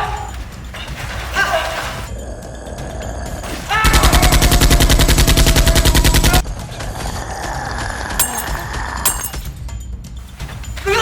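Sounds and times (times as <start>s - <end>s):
automatic gunfire: 4.0s - 6.4s.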